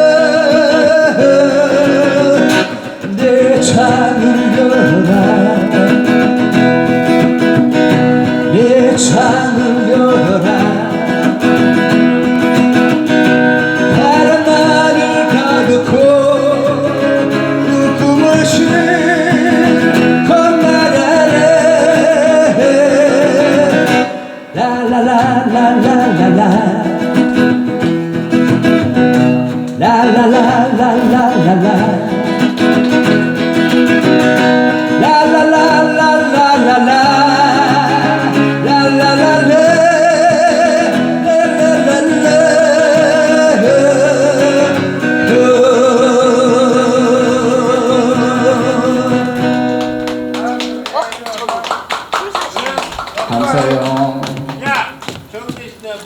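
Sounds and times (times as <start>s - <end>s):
person singing: 0.0s - 12.0s, 13.0s - 28.0s, 29.5s - 50.0s
acoustic guitar: 0.0s - 56.0s.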